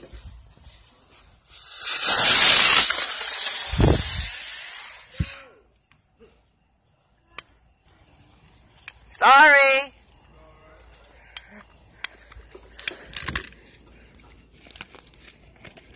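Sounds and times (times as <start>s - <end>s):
firework hissing loudly: 1.5s - 5.4s.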